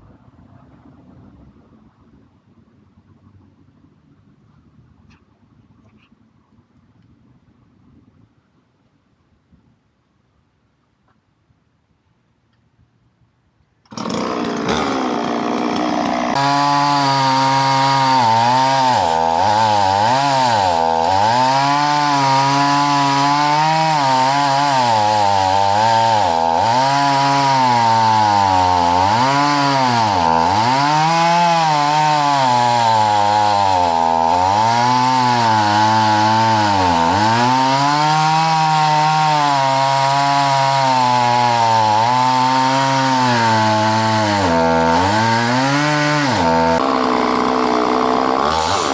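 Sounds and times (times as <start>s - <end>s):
chainsaw cutting a log: 13.8s - 48.9s.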